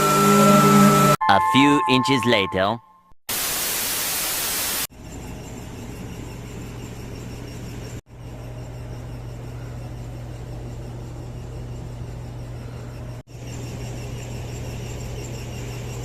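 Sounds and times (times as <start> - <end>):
low mechanical hum: 5.0 - 16.0.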